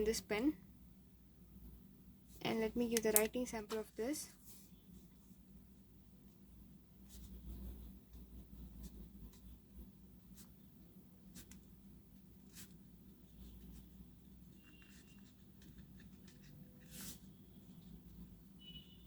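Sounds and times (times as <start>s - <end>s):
pen scratching on paper: 11.3s - 18.1s.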